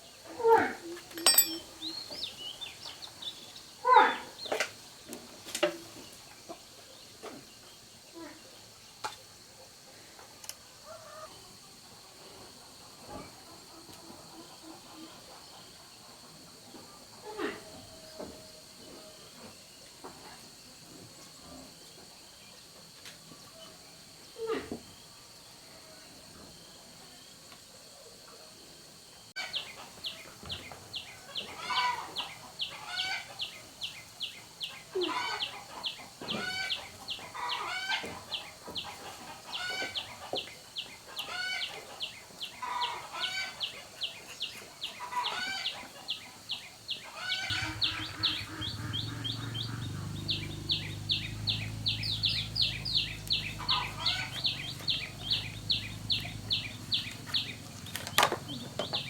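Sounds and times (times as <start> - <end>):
birds chirping: 0.0 - 4.6, 29.4 - 59.0
whistled bird calls: 47.3 - 59.0.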